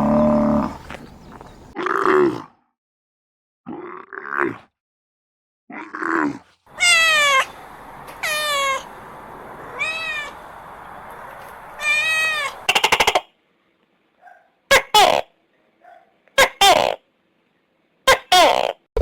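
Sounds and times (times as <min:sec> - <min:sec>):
cat meowing: 0:06.8 - 0:07.5, 0:08.1 - 0:08.9, 0:09.7 - 0:10.4, 0:11.8 - 0:12.6.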